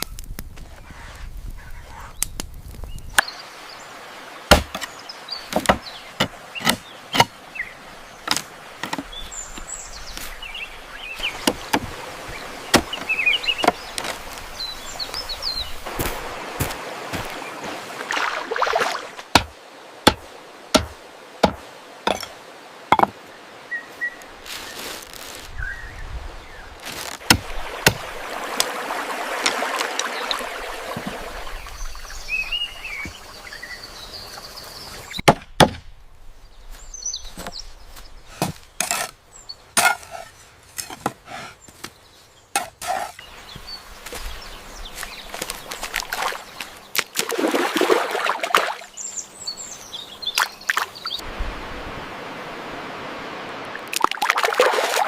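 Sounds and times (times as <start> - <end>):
faint birds chirping: 0.0 - 26.8, 27.5 - 35.3, 35.9 - 47.3, 48.2 - 51.4
chopping blows: 18.2 - 22.3.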